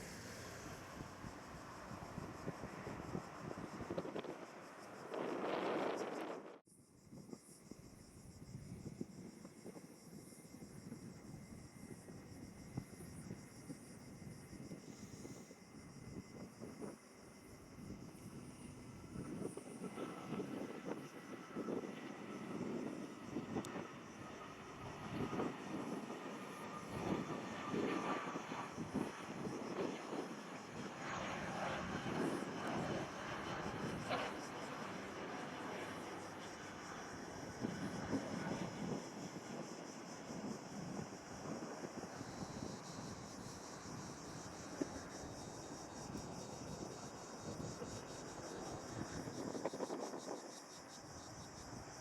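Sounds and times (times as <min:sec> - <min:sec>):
wind buffeting microphone: 0:00.0 - 0:06.6, 0:15.8 - 0:35.9, 0:36.5 - 0:50.6
insects chirping: 0:00.0 - 0:52.0
jet airliner engines on approach: 0:00.0 - 0:52.0.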